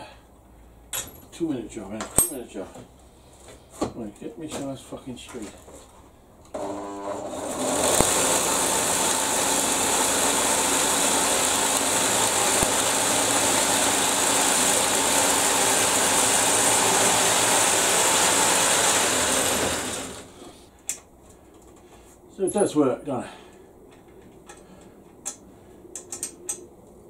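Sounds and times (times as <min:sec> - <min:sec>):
belt sander running: 0:06.5 - 0:20.6.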